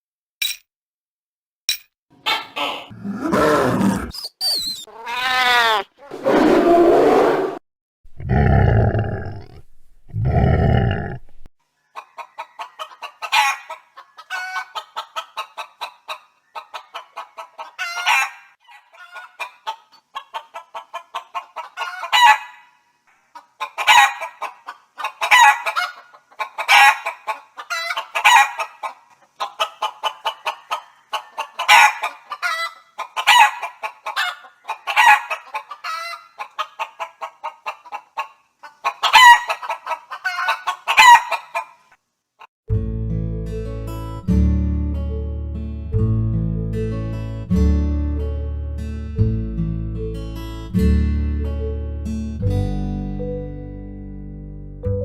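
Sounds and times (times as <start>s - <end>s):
low heavy chicken calls: 2.2s - 4.2s, 4.9s - 7.6s, 8.2s - 14.8s
chicken squawking: 2.2s - 7.6s, 12.0s - 22.7s, 23.4s - 41.8s
hens clucking: 9.3s - 22.6s, 23.2s - 41.8s.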